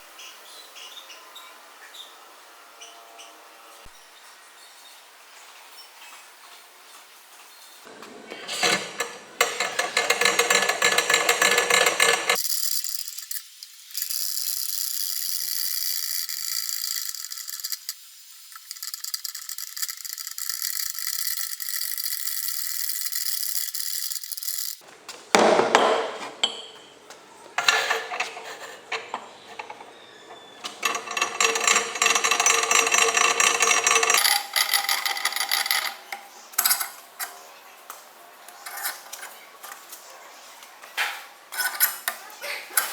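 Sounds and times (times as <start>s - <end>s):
metal vise clicking and rattling: 8.3s - 13.4s, 27.6s - 29.9s, 30.6s - 37.4s, 38.5s - 39.8s.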